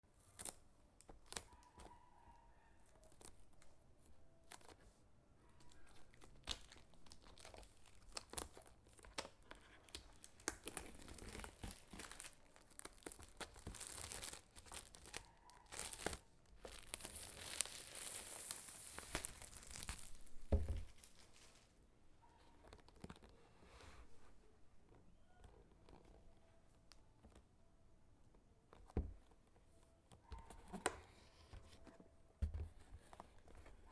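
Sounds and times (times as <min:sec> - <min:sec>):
packaging crinkling and tearing: 0:05.6 - 0:21.8.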